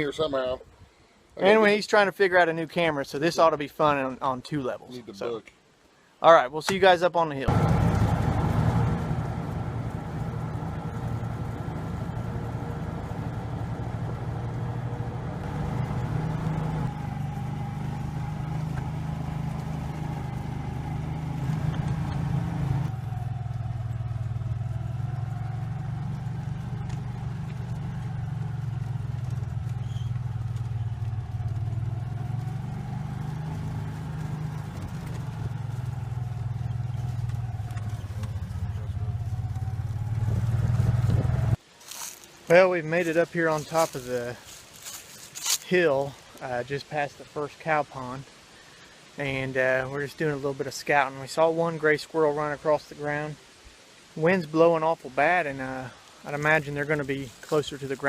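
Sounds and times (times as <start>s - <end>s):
utility vehicle engine running: 7.5s - 41.6s.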